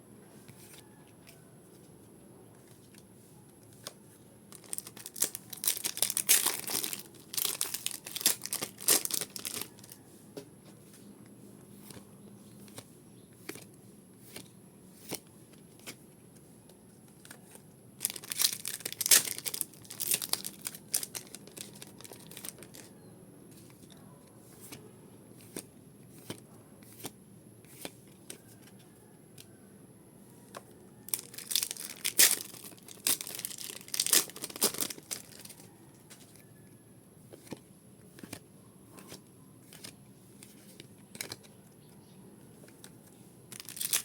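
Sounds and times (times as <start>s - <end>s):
foil wrappers tearing and crinkling: 4.5s - 10.0s, 18.0s - 22.9s, 31.1s - 35.6s, 43.5s - 44.0s.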